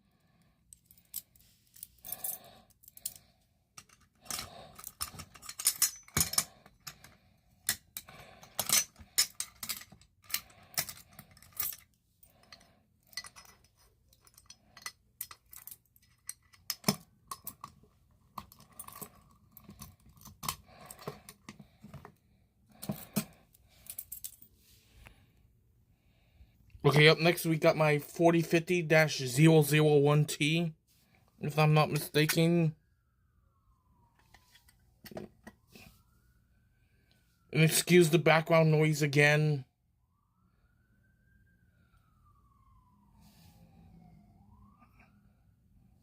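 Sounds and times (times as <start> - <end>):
keys jangling: 3.8 - 7.2, 8.0 - 17.7, 18.4 - 21.4
metallic clicks and rattles: 3.8 - 11.8.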